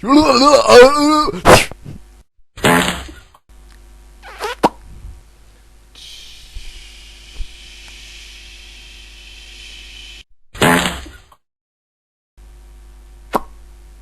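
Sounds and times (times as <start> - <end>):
cartoon vocal noises: 0.0 - 1.4
faint hiss: 6.0 - 10.2.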